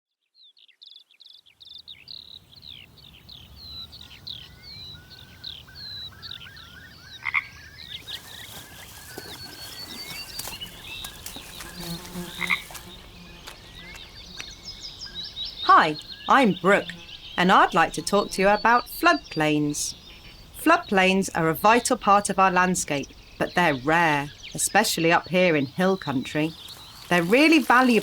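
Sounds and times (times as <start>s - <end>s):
croaking calls: 5.5s - 28.0s
rapid high bird chirps: 5.8s - 28.0s.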